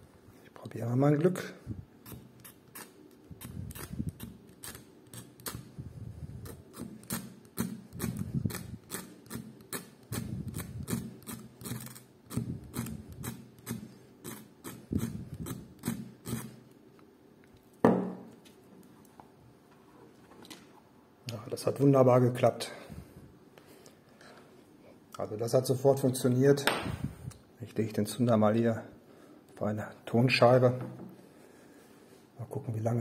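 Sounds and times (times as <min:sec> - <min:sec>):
saw blade rasping on ferro rod: 0:06.5 - 0:16.5.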